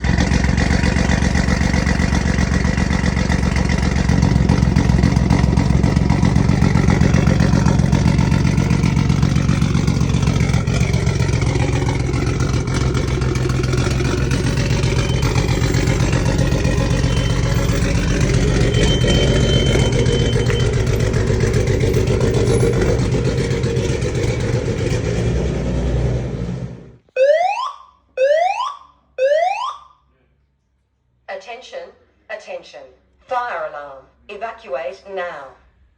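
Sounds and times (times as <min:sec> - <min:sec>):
car engine idling: 0:00.0 - 0:27.0.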